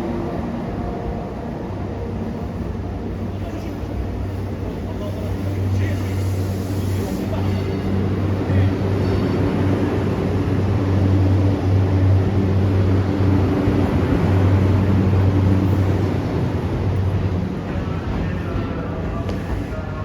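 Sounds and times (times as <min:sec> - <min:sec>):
electric locomotive humming: 0:00.0 - 0:20.0.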